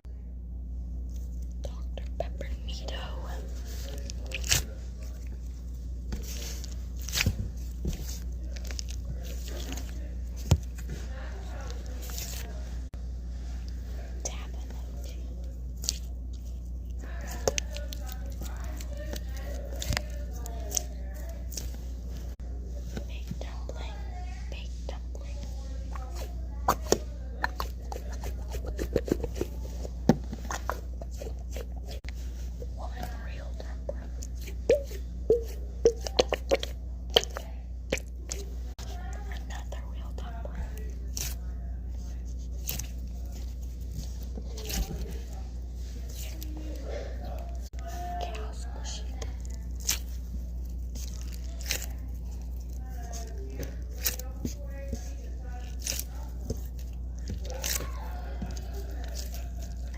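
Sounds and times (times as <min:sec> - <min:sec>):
foam toy rustling and crackling: 0:14.9 - 0:22.4, 0:40.5 - 0:59.9.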